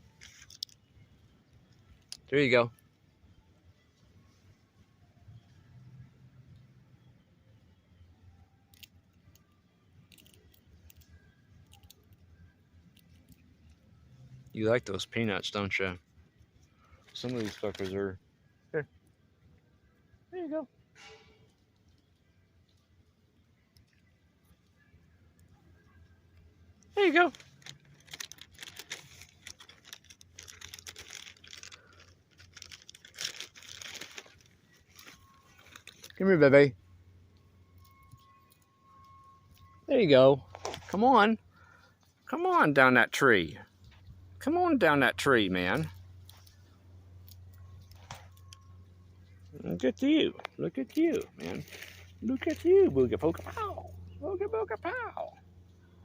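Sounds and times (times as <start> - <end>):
squirrel gnawing a shell: 0.1 - 2.3, 8.5 - 18.0, 21.4 - 36.2, 37.1 - 39.9, 45.3 - 55.0
squirrel cracking peanut shell: 0.2 - 0.8, 8.6 - 14.4, 23.6 - 36.2.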